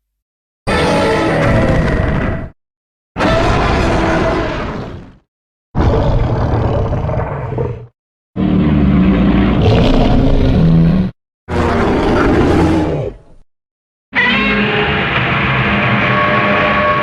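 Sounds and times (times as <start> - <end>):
monster roars: 0.7 - 2.6, 3.2 - 5.2, 5.8 - 13.4.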